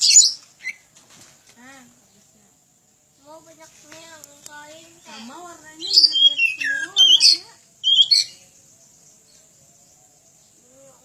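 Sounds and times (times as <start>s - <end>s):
bird singing whistles: 0.0s - 0.8s, 5.8s - 8.4s.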